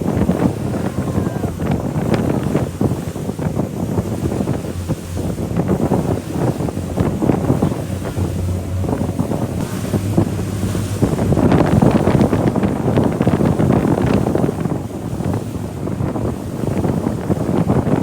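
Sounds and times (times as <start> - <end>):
water splashing against hull: 0.0 - 18.0
wind buffeting microphone: 0.0 - 18.0.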